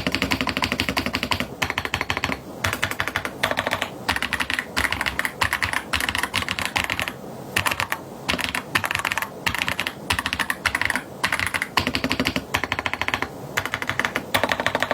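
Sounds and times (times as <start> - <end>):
mechanical keyboard typing: 0.0 - 14.9.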